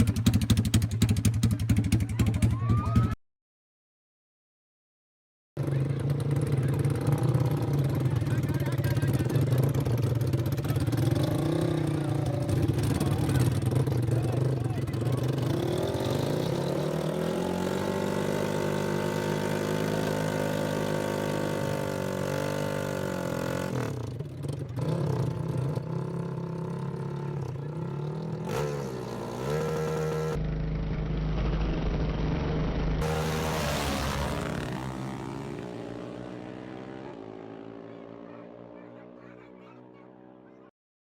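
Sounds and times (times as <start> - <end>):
atv engines revving: 5.6 - 40.7
deep low rumble: 30.4 - 33.1.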